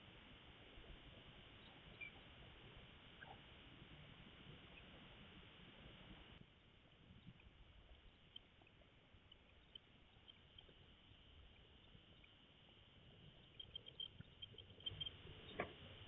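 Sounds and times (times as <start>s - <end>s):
faint steady hiss: 0.0s - 16.0s
small clicks: 6.9s - 16.0s.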